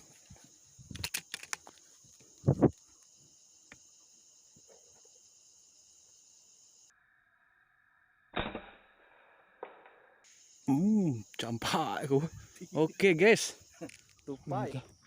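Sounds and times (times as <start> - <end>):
high-pitched insect buzz: 0.0 - 8.5, 10.2 - 15.0
faint steady tone: 10.0 - 15.0.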